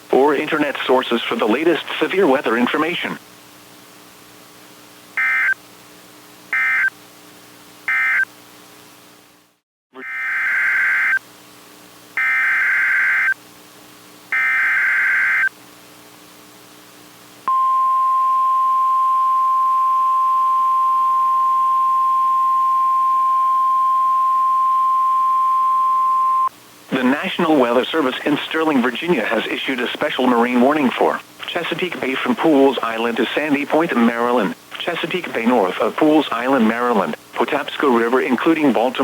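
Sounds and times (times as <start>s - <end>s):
screechy data bursts: 5.2s - 5.6s, 6.6s - 6.9s, 10.0s - 11.2s, 12.2s - 13.4s, 14.3s - 15.5s
steady warning alarm tone: 5.2s - 5.6s, 6.6s - 6.9s, 7.9s - 8.2s, 10.0s - 11.2s, 12.2s - 13.4s, 14.3s - 15.5s, 17.5s - 26.5s.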